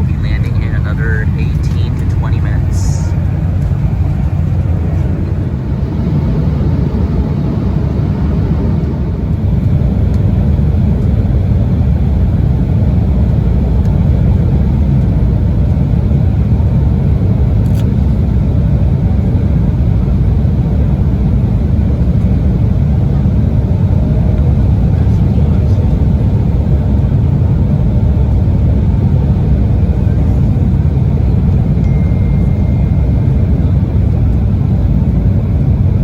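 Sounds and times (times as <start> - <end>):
jet cabin engine and airflow rumble: 0.0 - 36.0.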